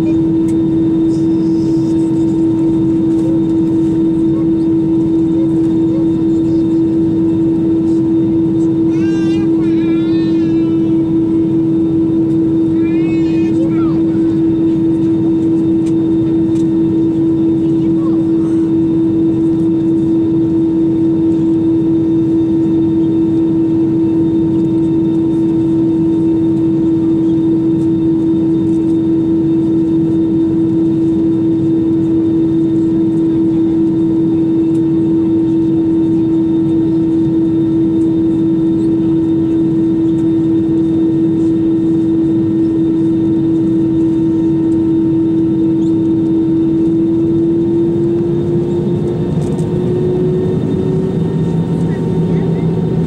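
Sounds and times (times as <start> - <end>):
aircraft cabin engine hum: 0.0 - 53.0.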